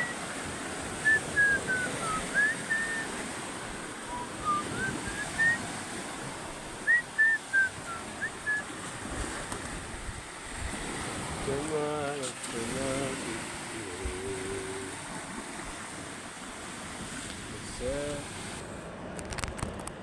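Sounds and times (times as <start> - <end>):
waves: 0.0 - 20.0
wind: 0.0 - 20.0
whistled notes: 1.0 - 3.1, 4.1 - 5.6, 6.8 - 8.6.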